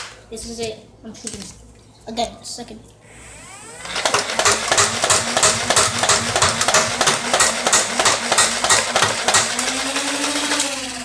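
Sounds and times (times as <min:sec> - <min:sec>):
flywheel motor whine: 0:03.0 - 0:11.0
toy blaster firing clacks: 0:03.8 - 0:11.0.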